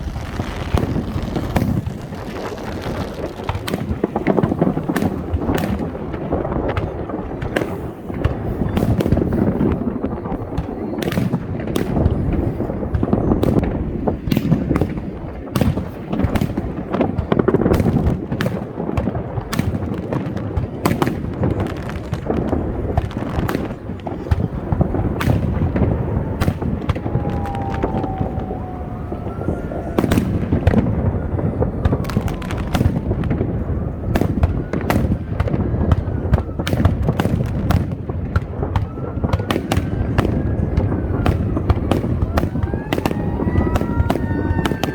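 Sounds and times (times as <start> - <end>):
firework whistles: 0.0 - 5.2, 22.8 - 37.5, 38.8 - 44.9
firework bangs and crackles: 0.0 - 44.9
low rumble of bursting shells: 0.0 - 44.9.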